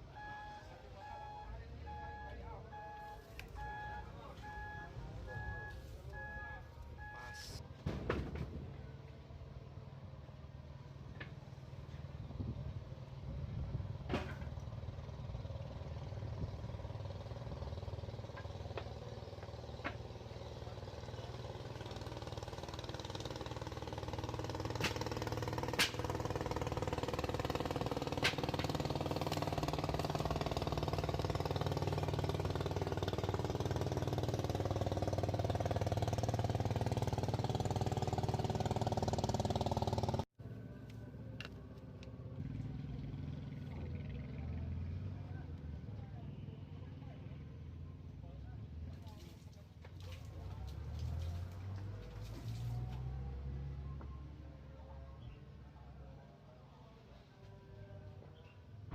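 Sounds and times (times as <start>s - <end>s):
quieter engine sound: 0.0s - 58.9s
small engine running: 14.7s - 45.3s.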